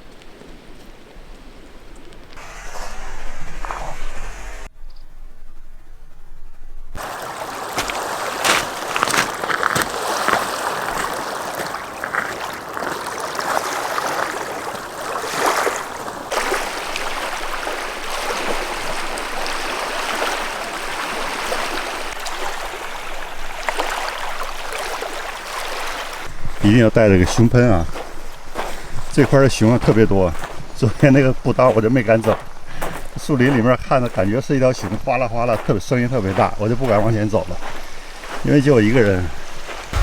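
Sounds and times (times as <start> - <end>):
running water splashing: 7.0 - 40.0.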